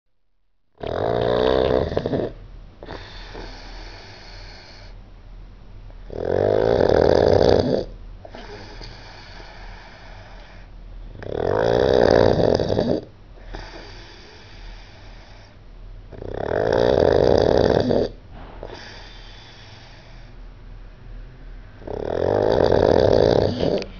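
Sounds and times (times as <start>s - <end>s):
loud snoring: 0.8s - 5.0s, 6.0s - 10.0s, 11.2s - 14.7s, 16.1s - 20.3s, 21.8s - 23.9s
quiet breathing: 2.8s - 5.0s, 8.2s - 11.0s, 12.9s - 15.7s, 18.1s - 23.9s.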